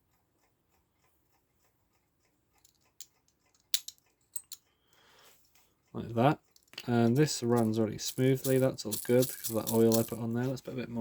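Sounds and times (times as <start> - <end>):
small metal clicks and taps: 2.5 - 4.7, 6.4 - 10.2.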